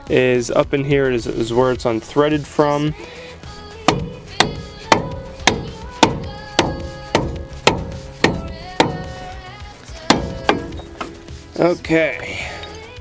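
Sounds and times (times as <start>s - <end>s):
sharp percussive beat: 3.9s - 9.3s.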